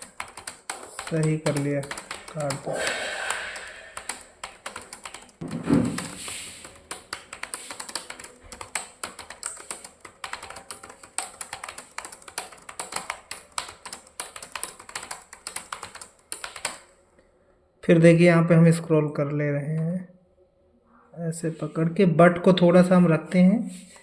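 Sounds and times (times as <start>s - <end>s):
computer keyboard typing: 0.0s - 16.9s.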